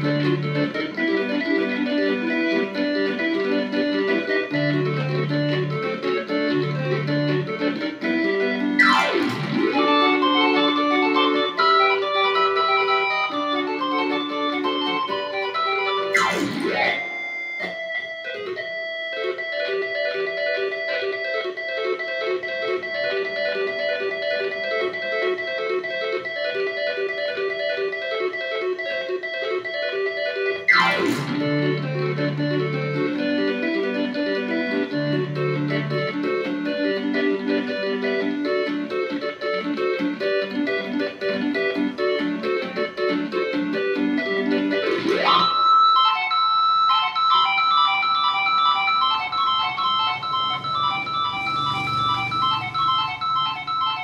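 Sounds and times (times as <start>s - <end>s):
combo organ chords and bass notes: 0.0s - 54.0s
downward pitch sweep: 6.6s - 18.6s, 30.7s - 36.2s, 48.0s - 54.0s.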